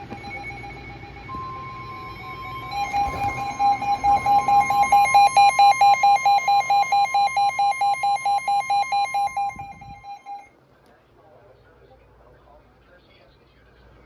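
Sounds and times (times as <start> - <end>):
rapid beeping alarm: 0.0 - 10.5
steady warning alarm tone: 0.0 - 10.5.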